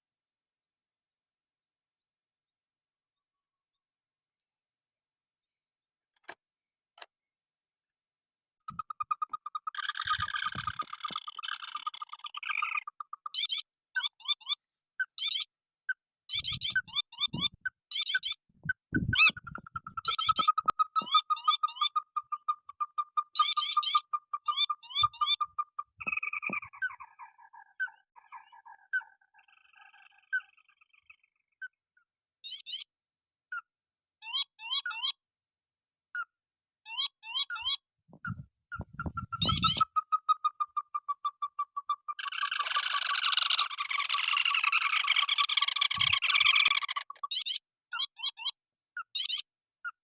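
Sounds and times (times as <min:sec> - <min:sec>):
crakes and waterhens calling: 0:08.7 - 0:14.6, 0:16.3 - 0:31.2, 0:38.7 - 0:48.6
fast bird trill: 0:08.7 - 0:15.5, 0:16.3 - 0:30.6, 0:36.9 - 0:49.4.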